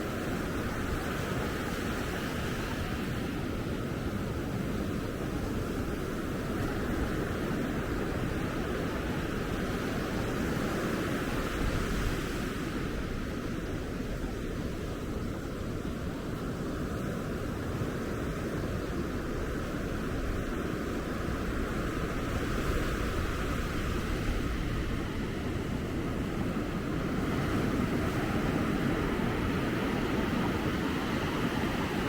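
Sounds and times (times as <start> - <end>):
ocean surf breaking on beach: 0.0 - 32.0.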